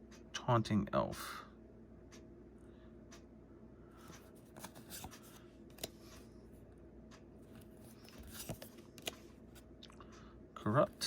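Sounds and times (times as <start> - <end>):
cards being flipped: 4.2 - 6.2, 7.6 - 9.6.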